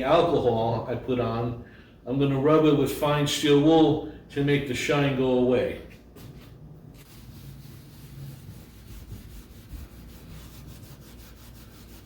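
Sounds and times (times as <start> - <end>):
steel wool rubbing on wood: 7.0 - 12.0.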